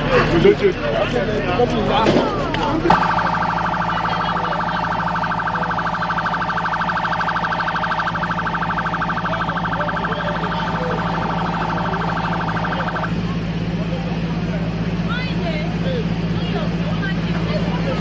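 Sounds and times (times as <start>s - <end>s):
electronic alarm siren warbling: 2.9s - 13.2s
steady low hum: 2.9s - 13.4s.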